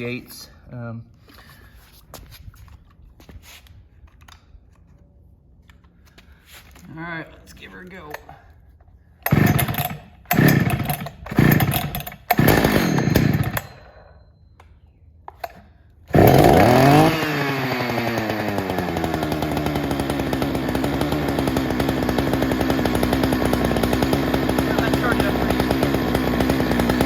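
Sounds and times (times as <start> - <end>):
chainsaw engine revving and idling: 9.2 - 13.8, 15.4 - 27.0
starter rope pulls: 9.2 - 13.8, 15.3 - 27.0.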